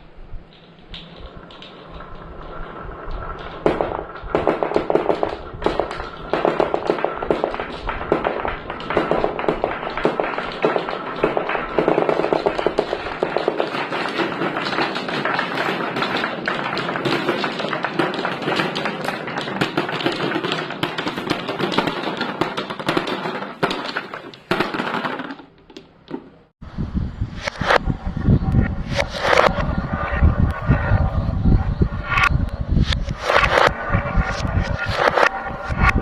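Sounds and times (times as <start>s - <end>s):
marbles rolling down plastic track: 0.5s - 25.8s
loud low sound: 26.6s - 36.0s.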